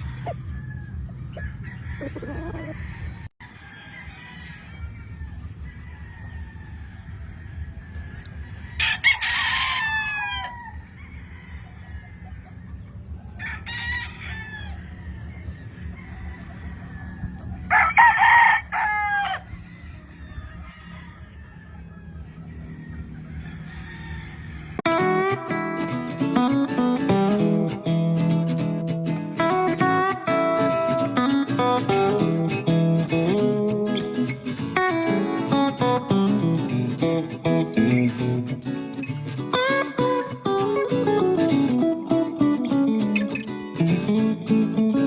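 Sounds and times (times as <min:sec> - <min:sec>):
roosters crowing: 0:00.0 - 0:27.6, 0:29.4 - 0:38.4.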